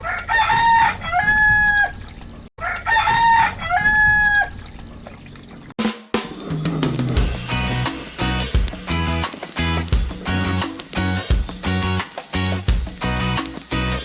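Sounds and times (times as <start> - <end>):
rooster crowing: 0.0 - 2.0, 2.6 - 4.6.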